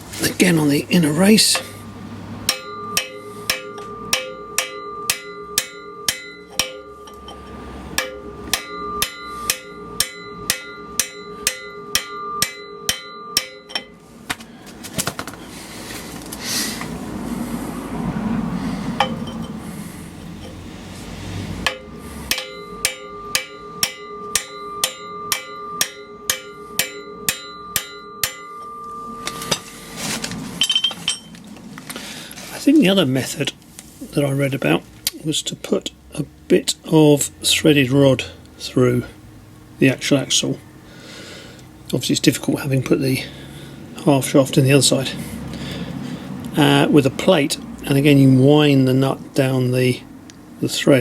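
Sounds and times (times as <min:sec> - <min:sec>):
hammer tapping on metal: 0:02.4 - 0:14.0, 0:19.0 - 0:19.6, 0:21.6 - 0:29.8.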